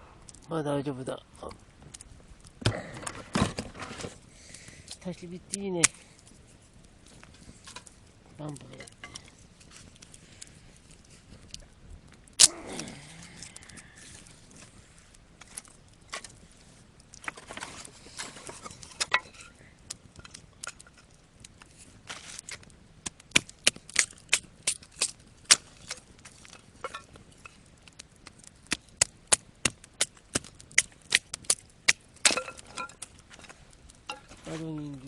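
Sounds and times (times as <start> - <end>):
dry wood cracking: 0.2 - 35.0
rustling: 1.8 - 22.8.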